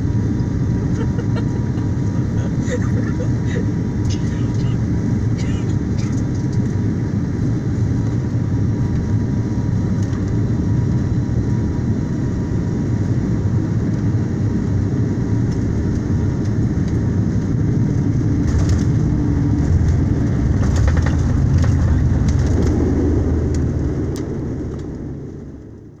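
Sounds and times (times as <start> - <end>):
airliner cabin rumble: 0.0 - 26.0
light rattles: 19.7 - 22.8.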